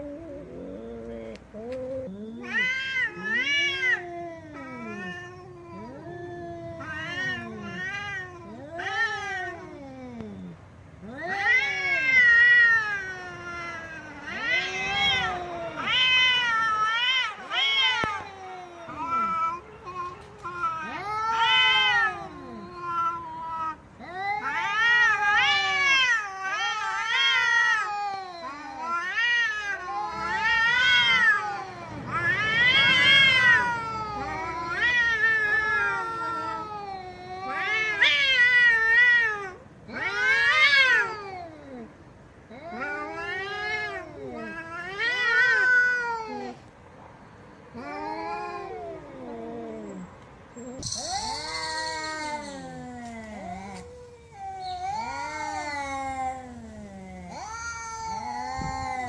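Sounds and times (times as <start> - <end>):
cat meowing: 0.0 - 46.8, 47.7 - 59.0.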